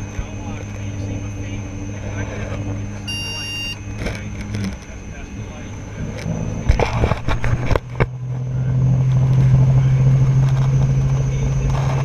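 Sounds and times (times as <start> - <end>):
helicopter engine and rotor drone: 0.0 - 8.8.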